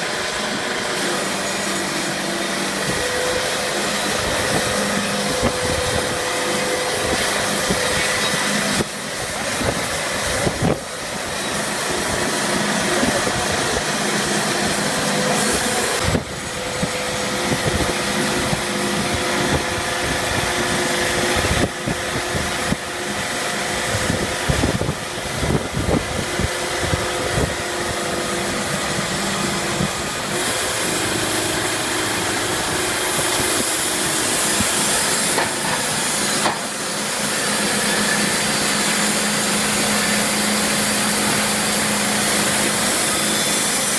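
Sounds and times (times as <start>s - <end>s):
machinery hum: 0.0s - 43.9s
sawmill machinery hissing: 0.0s - 43.9s.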